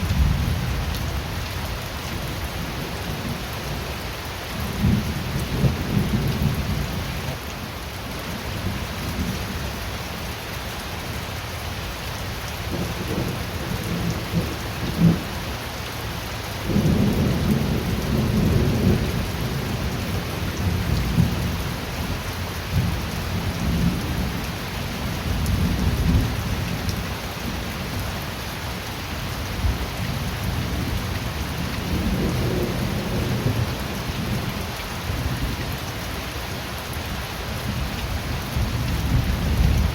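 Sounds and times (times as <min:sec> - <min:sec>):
steady rain: 0:00.0 - 0:39.9
thunder rumbling: 0:16.7 - 0:21.6, 0:31.6 - 0:34.5.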